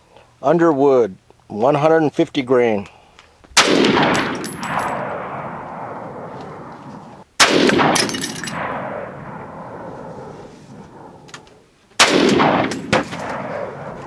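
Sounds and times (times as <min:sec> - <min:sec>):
rifle shots cracking: 0:03.6 - 0:11.4, 0:12.0 - 0:14.0
gunshot rolling echo: 0:03.6 - 0:14.0.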